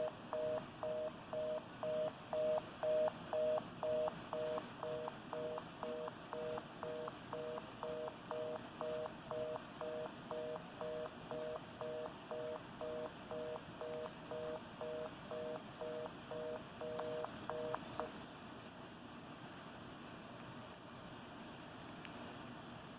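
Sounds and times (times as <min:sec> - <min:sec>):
telephone fast busy signal: 0:00.0 - 0:18.1.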